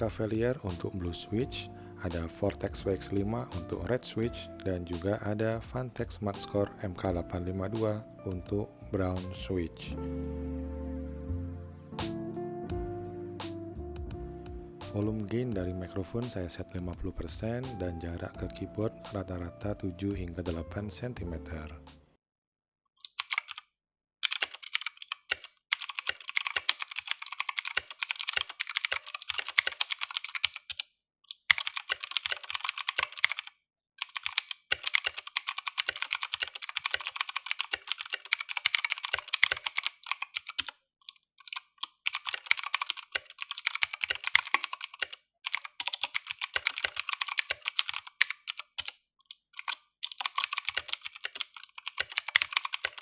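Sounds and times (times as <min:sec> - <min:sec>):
mechanical keyboard clicks: 0:23.1 - 0:23.6, 0:24.2 - 0:40.7, 0:41.4 - 0:53.0.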